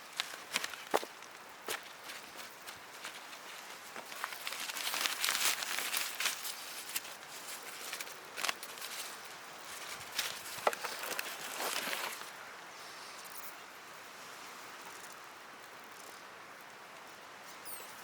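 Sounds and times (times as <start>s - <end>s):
rustling and crinkling: 0.0s - 12.4s.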